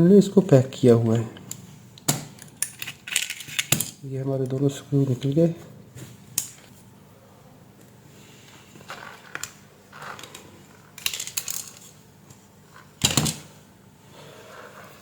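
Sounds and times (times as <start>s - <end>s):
small parts and tools rattling: 1.4s - 4.0s, 8.8s - 12.0s.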